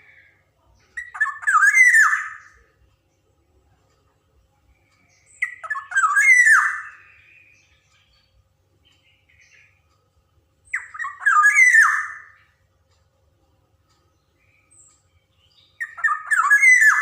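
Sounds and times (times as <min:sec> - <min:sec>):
bird calling harsh falling notes: 0:01.0 - 0:02.6, 0:05.4 - 0:07.6, 0:10.7 - 0:12.5, 0:15.8 - 0:17.0.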